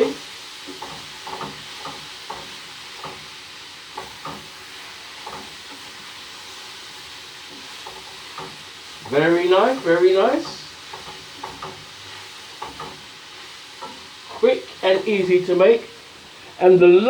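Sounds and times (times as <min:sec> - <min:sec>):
vegetables sizzling in oil: 0:00.0 - 0:17.0
utensil scraping pan: 0:07.5 - 0:14.6.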